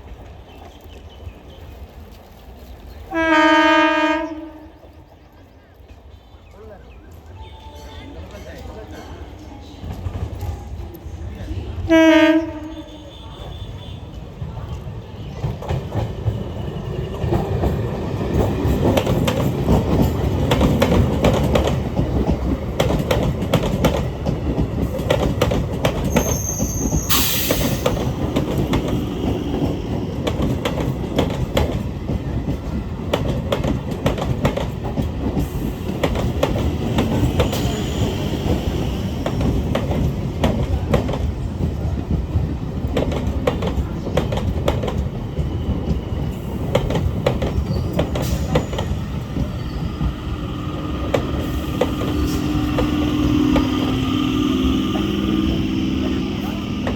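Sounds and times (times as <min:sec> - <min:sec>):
train rumbling past: 0:00.0 - 0:56.9
wheels clicking over rail joints: 0:14.1 - 0:56.9
faint wheel squeals: 0:26.1 - 0:27.9
high squeal: 0:26.1 - 0:28.0.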